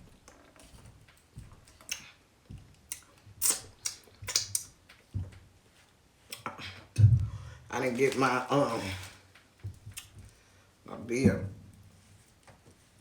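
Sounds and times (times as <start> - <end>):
mouth smacks and clicks while eating: 1.7 - 5.4, 6.3 - 7.0, 9.7 - 10.3.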